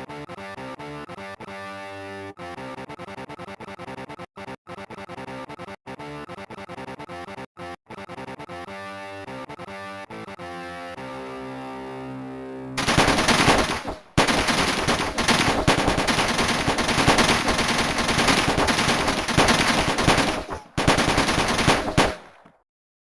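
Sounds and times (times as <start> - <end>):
rapid gunfire rattle: 12.8 - 22.6.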